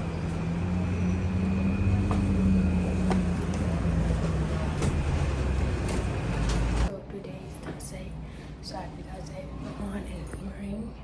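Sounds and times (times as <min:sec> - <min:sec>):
low vehicle rumble: 0:00.0 - 0:06.9.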